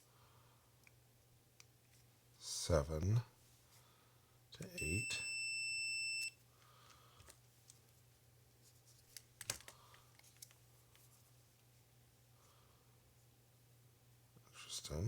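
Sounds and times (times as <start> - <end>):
multimeter continuity beep: 4.7 - 6.4.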